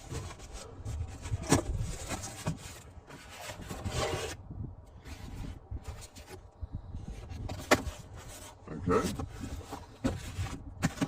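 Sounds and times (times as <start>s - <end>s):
packaging rubbing and rustling: 0.0s - 4.4s.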